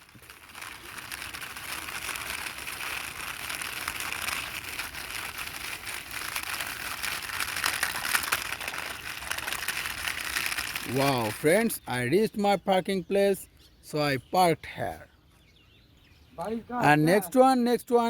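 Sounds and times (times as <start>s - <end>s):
toy wheels rolling: 0.0s - 11.9s.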